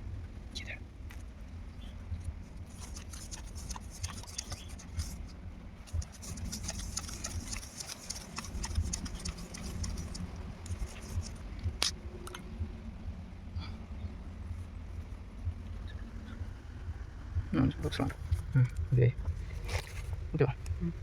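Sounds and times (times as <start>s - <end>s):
steady low rumble: 0.0s - 21.0s
plastic fitting clicks and rubs: 5.9s - 12.4s.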